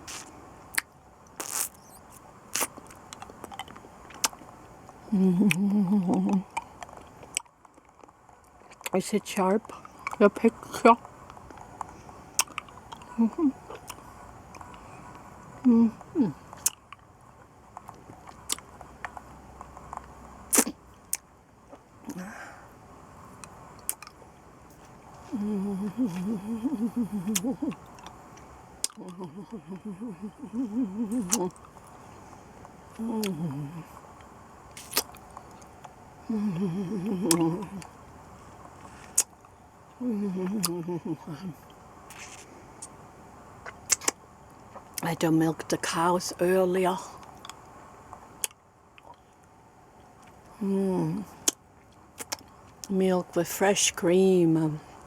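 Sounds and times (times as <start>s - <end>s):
wet mouth clicks and smacks: 0.1s - 4.4s, 11.5s - 13.1s, 28.8s - 29.2s, 31.1s - 31.9s, 34.7s - 36.0s, 37.3s - 37.5s, 39.1s - 39.4s, 43.6s - 45.0s, 52.2s - 52.5s
person humming: 5.1s - 6.5s, 13.1s - 13.6s, 15.6s - 16.5s, 25.2s - 27.8s, 28.9s - 31.6s, 33.0s - 34.0s, 36.2s - 37.9s, 40.0s - 41.6s, 50.6s - 51.3s
wet clicks and smacks of lollipop: 43.6s - 44.2s, 52.2s - 52.5s.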